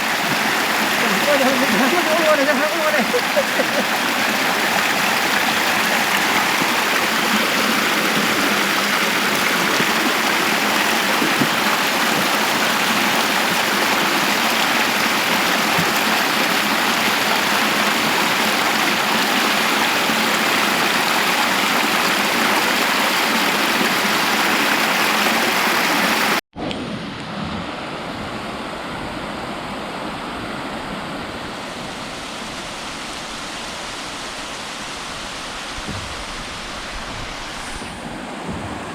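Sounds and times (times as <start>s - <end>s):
stream rushing beneath ice: 0.0s - 26.4s, 27.3s - 38.9s.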